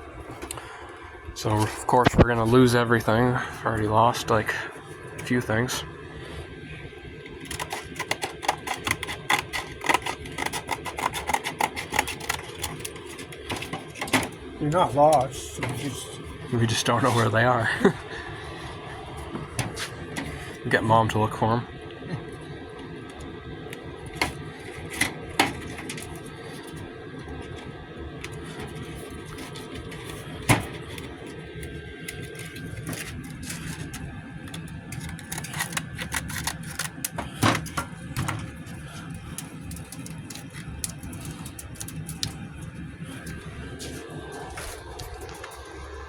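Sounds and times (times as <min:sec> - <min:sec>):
steady background hum: 0:00.0 - 0:46.0
hand tools clicking and knocking: 0:07.4 - 0:14.4.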